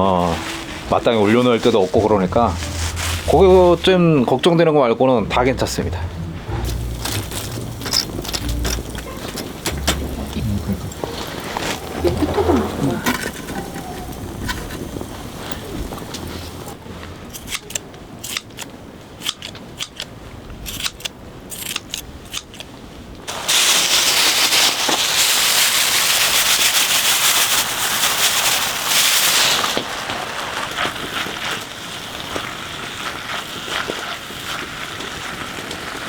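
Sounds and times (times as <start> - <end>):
loud steady hiss: 0.0 - 16.8, 23.3 - 36.0
wood fire crackling and popping: 6.5 - 16.8, 27.6 - 36.0.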